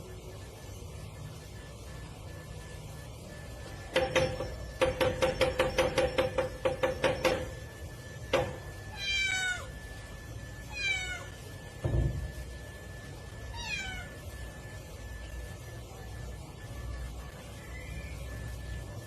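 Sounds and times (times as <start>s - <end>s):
cat meowing: 8.9s - 9.7s, 10.7s - 11.4s, 13.5s - 14.1s
dull thump: 11.8s - 12.3s.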